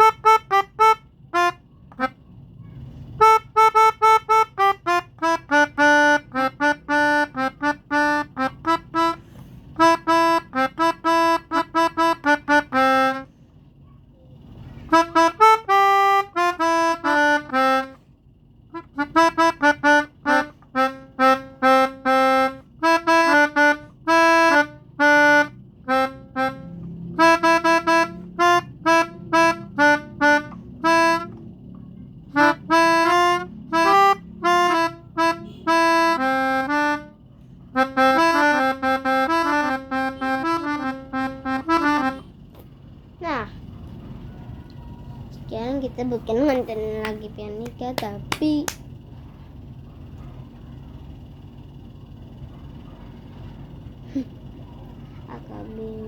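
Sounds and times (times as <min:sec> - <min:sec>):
melodica playing a tune: 0:00.0 - 0:02.2, 0:03.0 - 0:13.3, 0:14.8 - 0:18.0, 0:18.7 - 0:31.5, 0:32.3 - 0:42.3.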